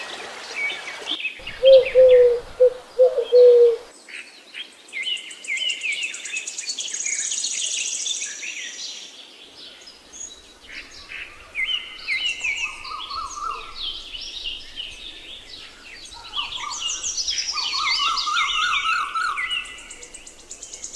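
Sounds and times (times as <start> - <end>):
birds singing and chirping: 1.4 - 3.9, 10.3 - 20.9.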